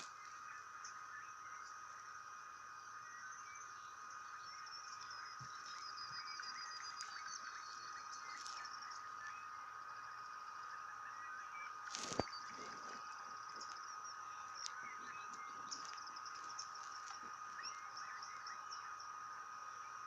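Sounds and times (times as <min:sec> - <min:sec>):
insects and frogs calling: 0:00.0 - 0:20.0.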